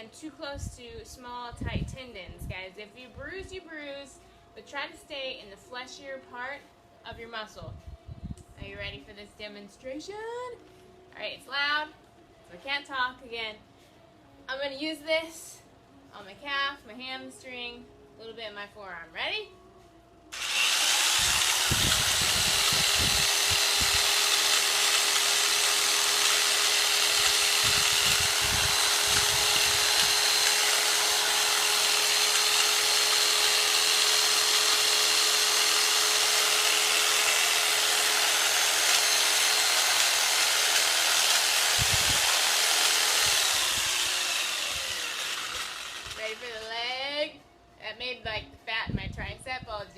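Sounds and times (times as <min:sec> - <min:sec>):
massager motor running: 0:20.4 - 0:46.7.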